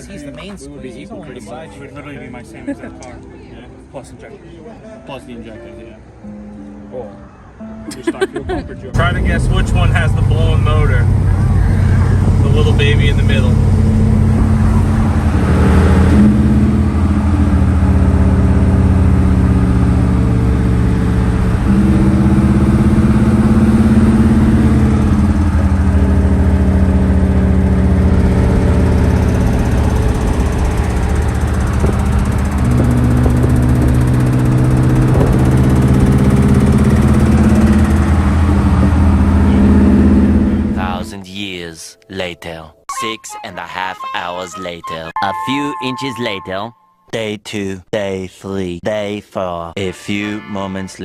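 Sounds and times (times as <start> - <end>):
car engine running: 8.9 - 41.1.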